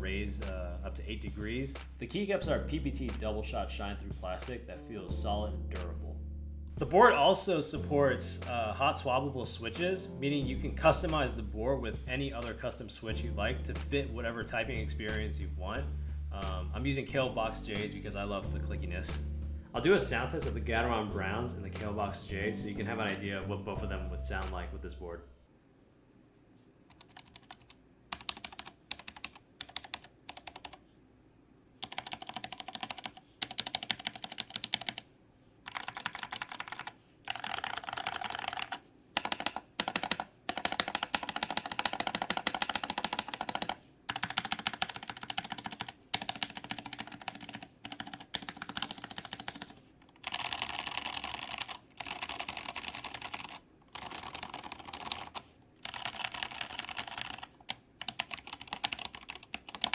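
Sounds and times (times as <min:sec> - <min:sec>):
typing on mechanical keyboard: 0:26.9 - 0:30.8, 0:31.8 - 0:35.1, 0:35.7 - 0:59.9.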